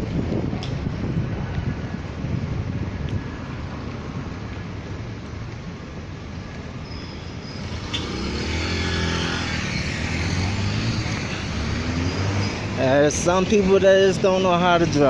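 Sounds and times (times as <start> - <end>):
cars passing: 0.0 - 15.0
vehicle engine passing close: 7.4 - 13.5.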